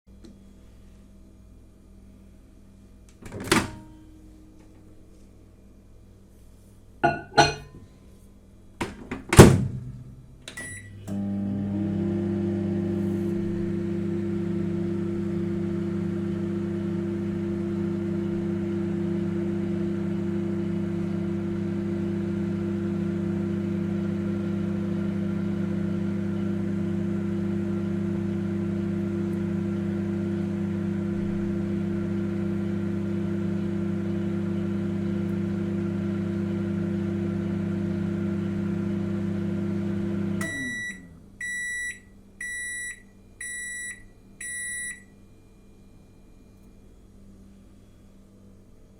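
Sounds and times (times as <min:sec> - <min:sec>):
microwave oven humming: 0:00.2 - 0:06.2, 0:06.9 - 0:48.9
microwave winding down whir: 0:10.4 - 0:45.2.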